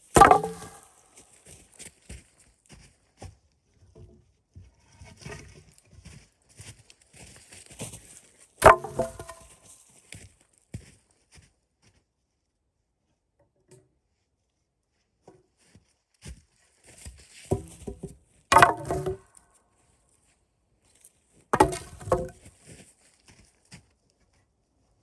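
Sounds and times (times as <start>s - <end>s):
wood cracking and knocking: 0.1s - 0.9s, 8.6s - 9.5s, 17.5s - 19.3s, 21.6s - 22.4s.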